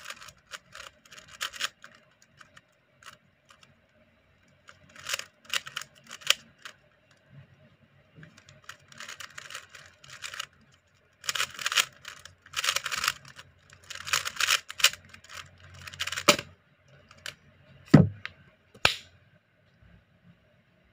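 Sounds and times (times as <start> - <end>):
plastic puzzle cube clicking: 0.0 - 3.7, 4.6 - 6.8, 8.2 - 10.6, 11.2 - 17.4
thump: 17.9 - 18.2.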